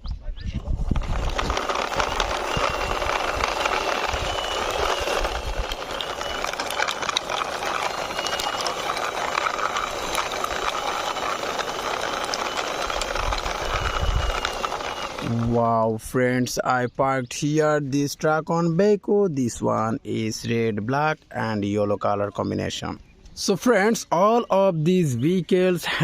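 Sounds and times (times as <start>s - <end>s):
toy truck wheels rolling: 0.5s - 15.9s
scattered clicks: 0.9s - 15.5s.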